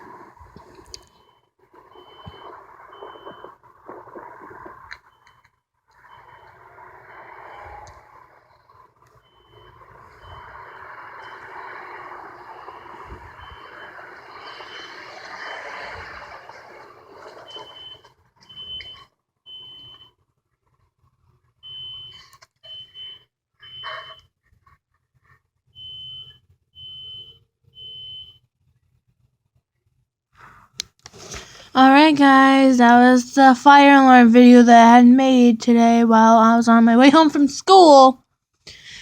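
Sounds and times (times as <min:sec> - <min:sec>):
fire alarm beeping: 0:01.0 - 0:07.9, 0:09.2 - 0:16.1, 0:17.4 - 0:20.1, 0:21.6 - 0:24.3, 0:25.8 - 0:28.4.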